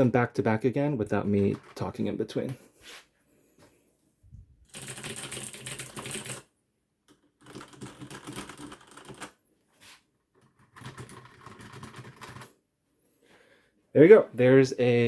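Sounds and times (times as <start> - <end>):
rapid typing on mechanical keyboards: 1.4 - 1.8, 4.6 - 6.5, 7.1 - 9.4, 10.4 - 12.5.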